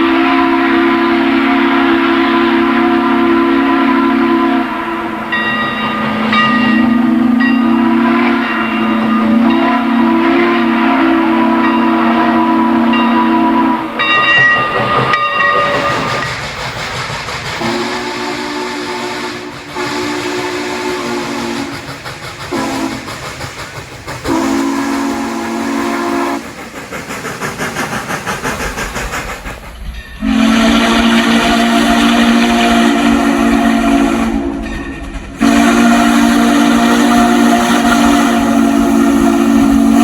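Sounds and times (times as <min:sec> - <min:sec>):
steam locomotive chime whistle: 0:00.0 - 0:16.4, 0:17.6 - 0:21.9, 0:22.5 - 0:23.1, 0:24.3 - 0:26.5, 0:30.0 - 0:40.0
locomotive chuffing: 0:00.0 - 0:40.0
steam hiss: 0:00.0 - 0:40.0.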